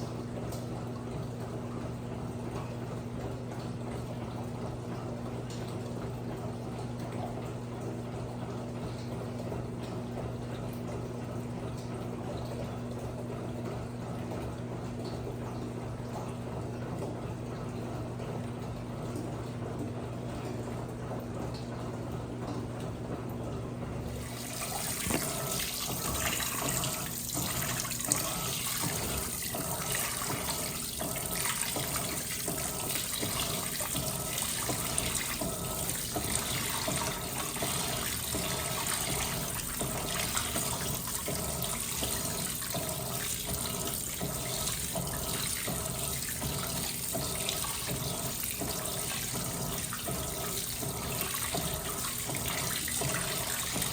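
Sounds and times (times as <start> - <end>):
washing machine humming: 0.0 - 53.9
water rushing into tub: 24.0 - 53.9.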